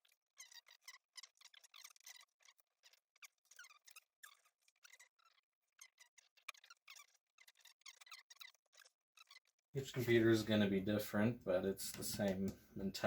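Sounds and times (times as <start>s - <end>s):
tools squeaking and scraping plastic: 0.0s - 10.4s.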